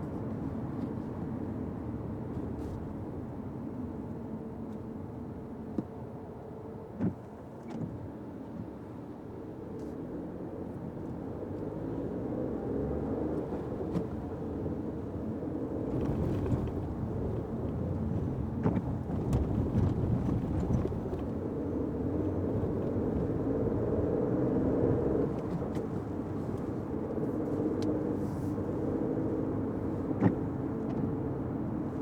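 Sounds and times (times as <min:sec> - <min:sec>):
car rumbling on wet road: 0:06.9 - 0:32.0.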